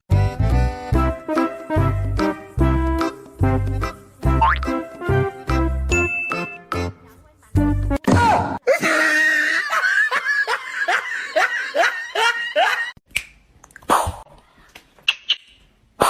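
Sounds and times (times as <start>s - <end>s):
person laughing: 8.7s - 13.0s.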